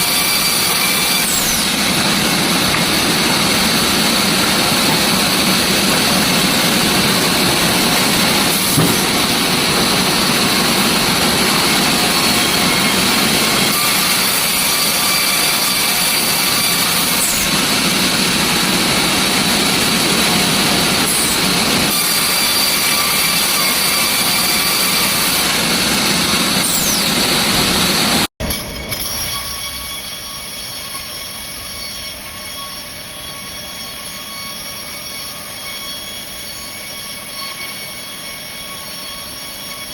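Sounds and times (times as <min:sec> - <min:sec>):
sawmill machinery sawing log: 0:00.0 - 0:28.3, 0:29.0 - 0:39.9
high whining tones: 0:00.4 - 0:13.8.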